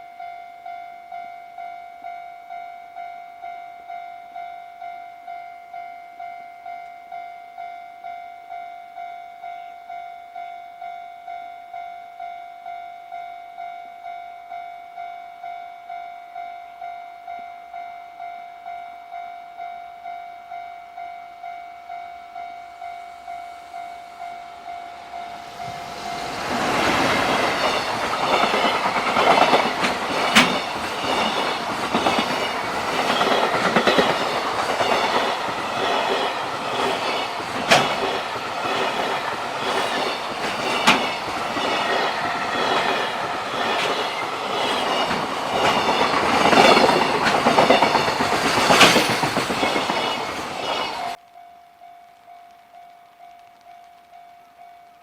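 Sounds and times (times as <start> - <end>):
freight train rumbling: 24.6 - 51.2
train wheels clicking on rail joints: 25.0 - 51.2.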